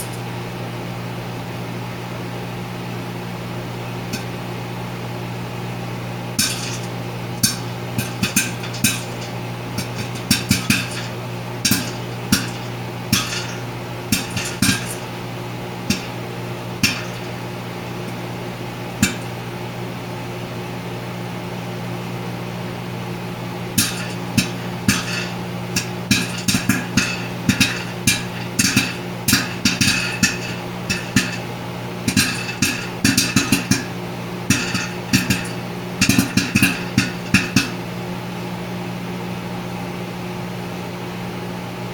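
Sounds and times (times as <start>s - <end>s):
popcorn kernels popping: 0.0s - 0.3s, 4.1s - 4.4s, 6.4s - 18.4s, 19.0s - 19.4s, 23.8s - 37.8s
microwave humming: 0.0s - 41.9s.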